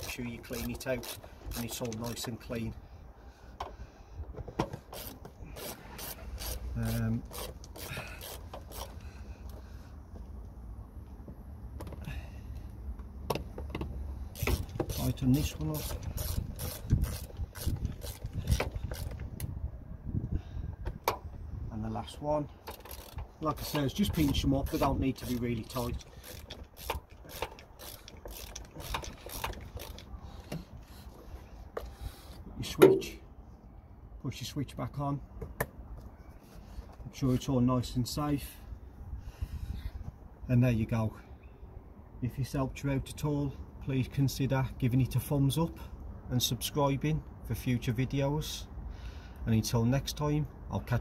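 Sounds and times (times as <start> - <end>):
tool clicking and scraping screws: 0.0 - 2.4, 4.6 - 9.6, 13.6 - 19.5, 22.6 - 32.4
wind rumbling on microphone: 14.4 - 22.2, 39.0 - 40.3.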